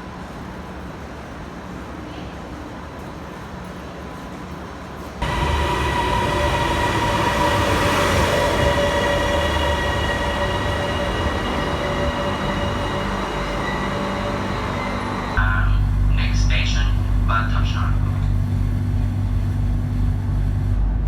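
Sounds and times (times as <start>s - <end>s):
metro train rumbling: 0.0s - 21.0s
high whine of motors: 5.2s - 21.0s.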